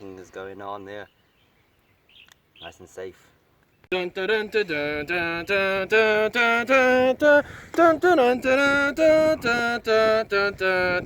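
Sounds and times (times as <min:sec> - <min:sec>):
person singing: 0:03.9 - 0:11.0.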